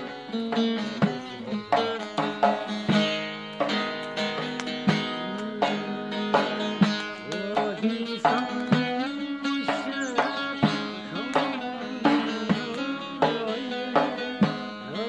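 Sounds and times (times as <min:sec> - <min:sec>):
plucked string instrument notes: 0:00.0 - 0:15.0.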